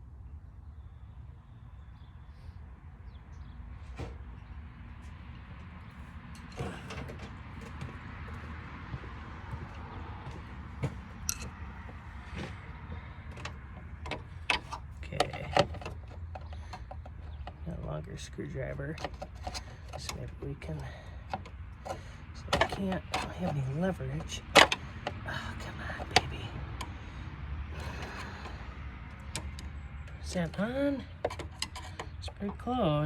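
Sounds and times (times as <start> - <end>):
hand tools clicking on metal: 10.8 - 17.8, 18.8 - 27.0, 27.8 - 32.7.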